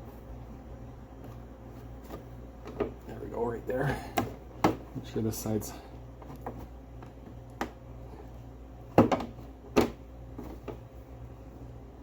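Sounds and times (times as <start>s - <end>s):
plastic panel knocking and clicking: 9.0s - 10.8s.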